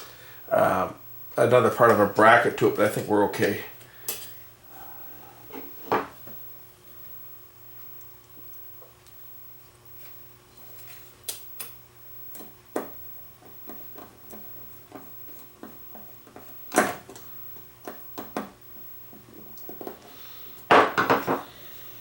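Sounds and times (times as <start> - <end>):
computer fan clicks and knocks: 11.3 - 20.0.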